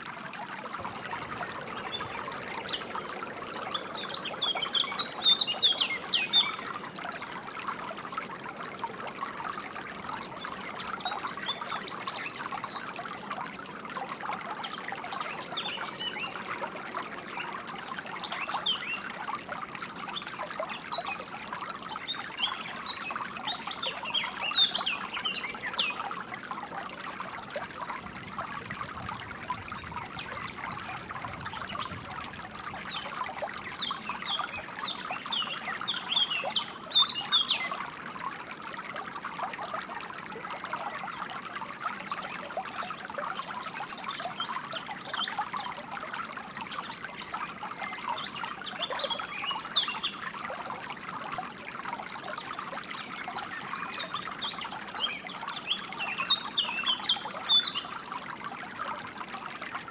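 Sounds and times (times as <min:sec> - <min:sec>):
stream trickling and babbling: 0:00.0 - 0:59.9
songbirds chirping: 0:00.8 - 0:07.0.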